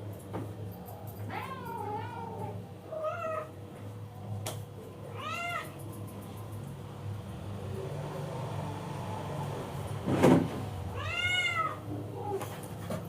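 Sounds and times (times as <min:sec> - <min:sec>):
cat meowing: 0:01.3 - 0:03.5, 0:05.1 - 0:05.8, 0:10.9 - 0:12.4.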